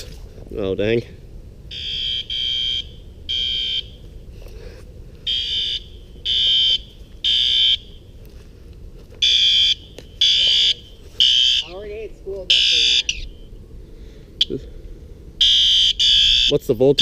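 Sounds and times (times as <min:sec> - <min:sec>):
fire alarm horn beeping: 0:01.7 - 0:04.0, 0:05.3 - 0:08.1, 0:09.2 - 0:11.8, 0:12.5 - 0:13.3, 0:15.4 - 0:16.6.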